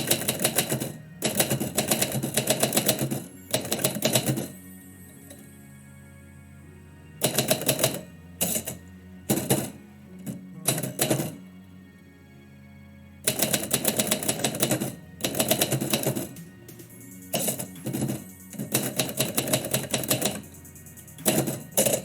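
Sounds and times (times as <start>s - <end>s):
typewriter keys typing: 0.0s - 4.6s, 7.2s - 9.7s, 13.3s - 22.0s
instrumental background music: 0.0s - 22.0s.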